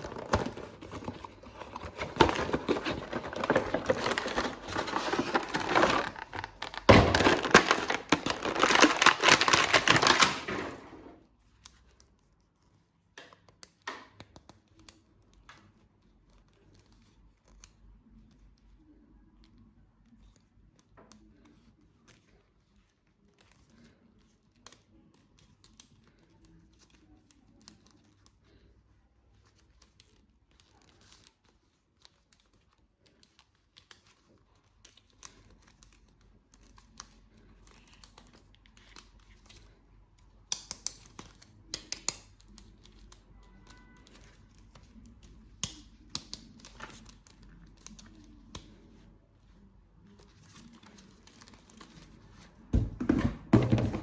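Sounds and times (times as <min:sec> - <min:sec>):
packaging crinkling and tearing: 0:00.0 - 0:11.0.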